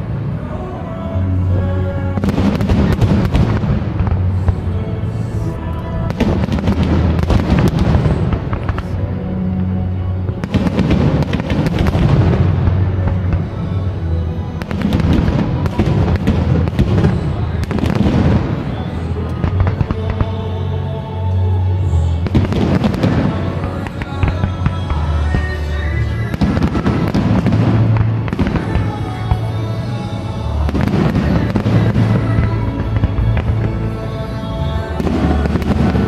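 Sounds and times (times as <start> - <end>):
fireworks bangs and crackling: 1.4 - 36.0.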